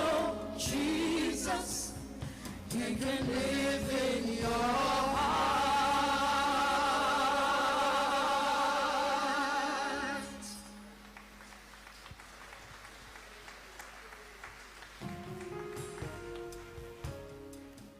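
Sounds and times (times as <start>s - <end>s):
gospel singing with vibrato: 0.0s - 11.4s.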